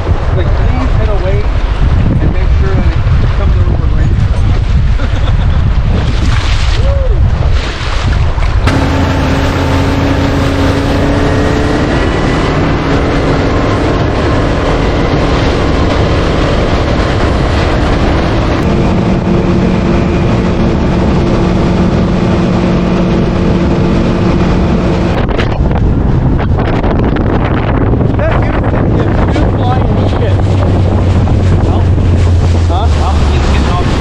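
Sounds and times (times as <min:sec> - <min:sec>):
wind buffeting microphone: 0:00.0 - 0:34.0
outboard motor running: 0:08.6 - 0:34.0.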